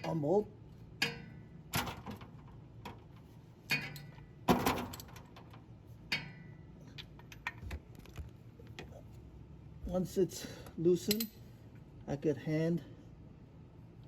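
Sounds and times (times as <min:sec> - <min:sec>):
ratchet metallic clicks and clanks: 0:11.0 - 0:11.4.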